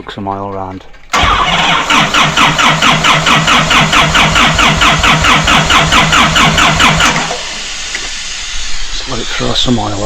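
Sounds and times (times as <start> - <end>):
diesel engine cranking on starter: 1.1 - 8.4.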